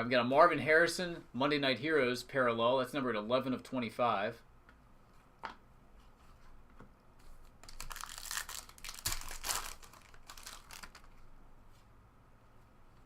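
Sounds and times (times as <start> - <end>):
wrapper crinkling and rustling: 7.4 - 11.3.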